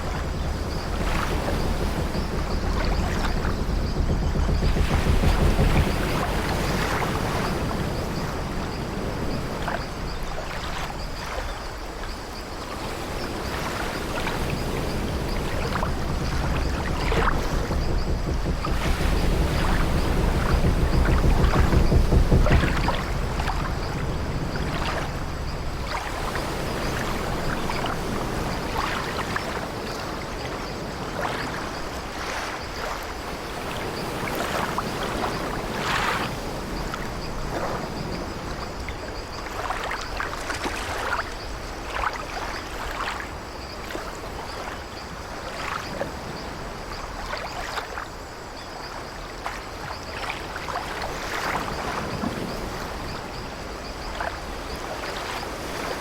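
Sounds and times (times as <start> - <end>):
wooden ship timbers creaking: 0.0 - 9.2, 14.2 - 28.6
sea waves washing: 0.0 - 56.0.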